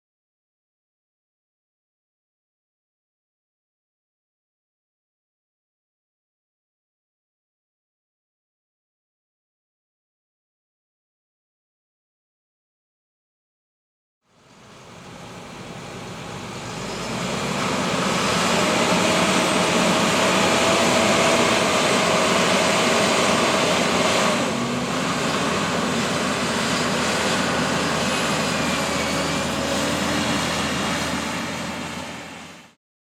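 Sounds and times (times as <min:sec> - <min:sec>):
heavy farm machinery running: 0:14.4 - 0:32.8
held whine: 0:14.4 - 0:32.8.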